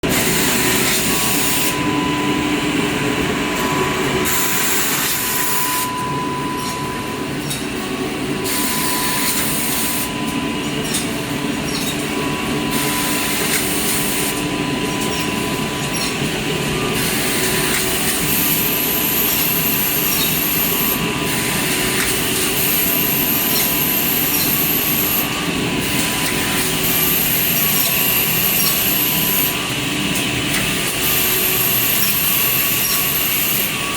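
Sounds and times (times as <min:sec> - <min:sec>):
thin high whine: 0:00.1 - 0:30.0
edge banding machine running: 0:07.2 - 0:33.9.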